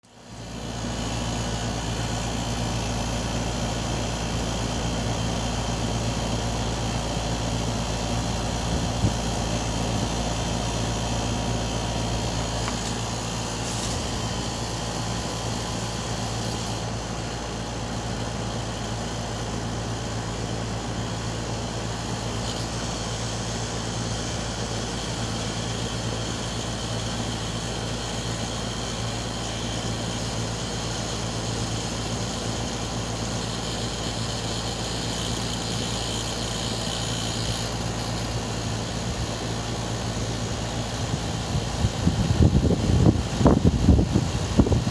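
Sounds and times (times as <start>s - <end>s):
air conditioner humming: 2.0s - 17.6s.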